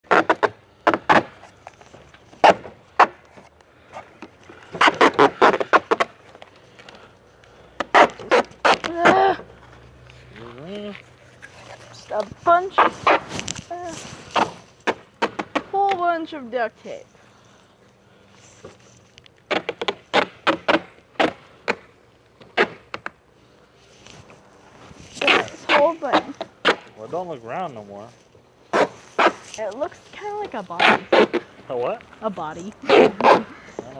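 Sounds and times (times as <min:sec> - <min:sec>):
duct tape ripping: 0:00.0 - 0:03.4, 0:04.6 - 0:07.0, 0:07.8 - 0:09.3, 0:10.1 - 0:16.0, 0:19.0 - 0:23.1, 0:24.9 - 0:27.0, 0:28.7 - 0:31.5.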